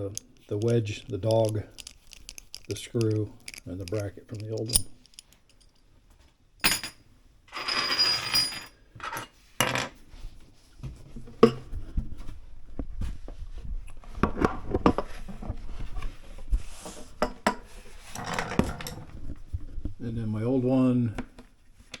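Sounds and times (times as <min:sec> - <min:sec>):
small metal parts clinking: 0:00.0 - 0:05.8.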